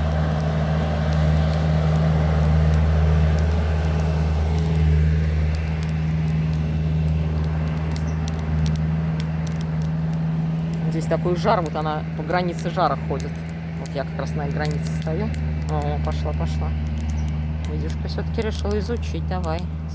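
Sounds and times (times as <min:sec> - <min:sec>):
burning wood crackling: 0:00.0 - 0:19.9
low engine-like hum: 0:00.0 - 0:19.9.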